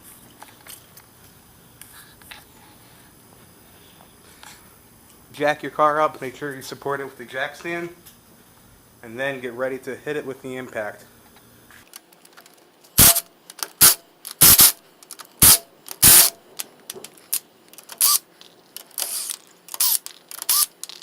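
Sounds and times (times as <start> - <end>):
impact wrench hammering: 13.0 - 14.8, 15.4 - 16.4.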